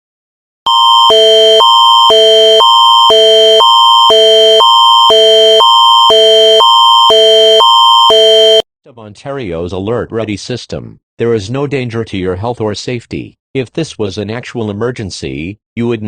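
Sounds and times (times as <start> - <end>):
electronic alarm chord: 0.7 - 8.6.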